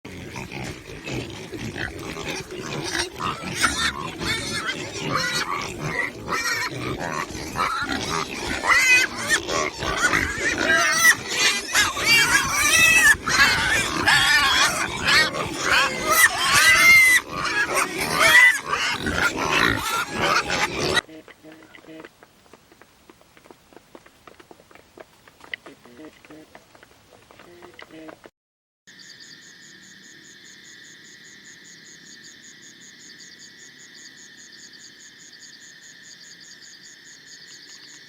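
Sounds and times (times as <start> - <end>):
pigs grunting and squealing: 0.1 - 22.1.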